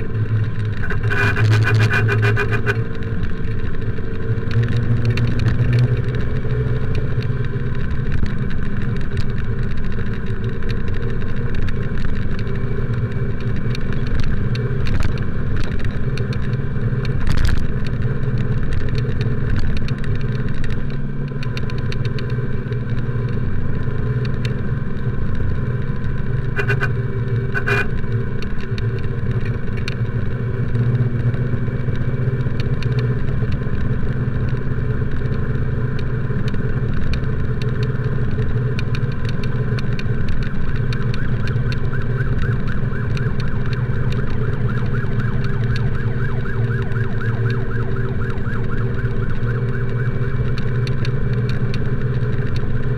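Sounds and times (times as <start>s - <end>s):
motorcycle engine running: 0.0s - 52.9s
short horn beeps: 0.8s - 2.9s, 26.5s - 27.9s.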